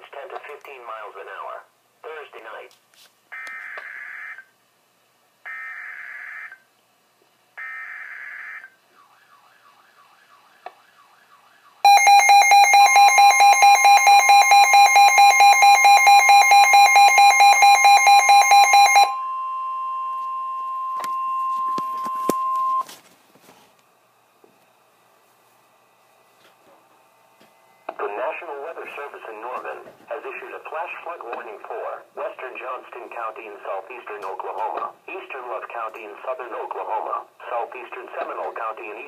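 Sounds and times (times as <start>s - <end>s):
pulsed beeping alarm: 11.8s - 22.9s.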